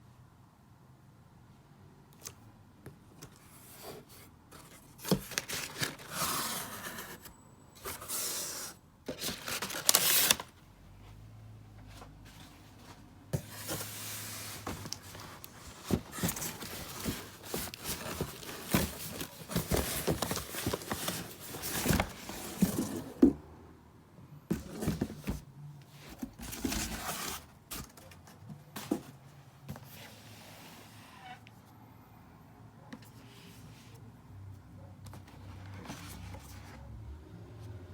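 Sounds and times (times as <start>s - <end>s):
cardboard box being opened: 3.4s - 10.5s, 12.0s - 23.4s, 24.5s - 29.2s
paper rustling: 4.5s - 10.6s, 11.9s - 23.2s.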